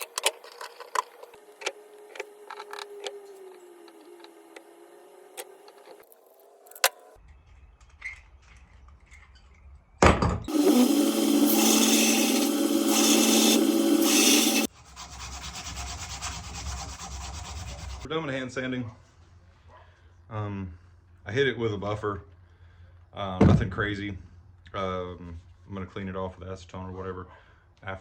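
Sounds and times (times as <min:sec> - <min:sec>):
power tool running: 0:10.5 - 0:14.7
hand sanding knife blade: 0:10.5 - 0:18.1.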